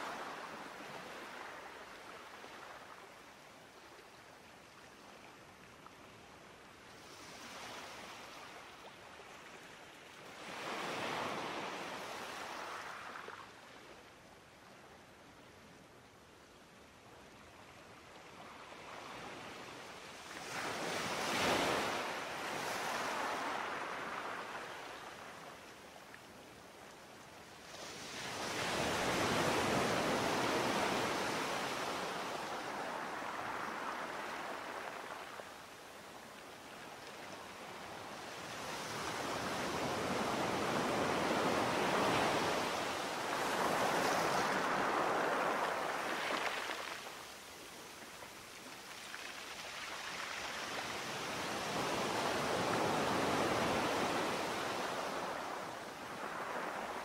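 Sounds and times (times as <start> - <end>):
sea waves surging: 38.9 - 47.2.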